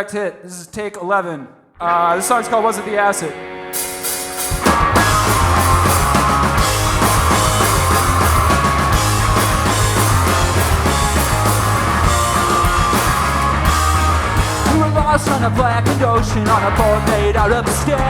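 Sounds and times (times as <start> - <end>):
distorted electric guitars: 1.8 - 18.0
punk rock band playing: 2.2 - 18.0
drum kit beat: 3.8 - 18.0.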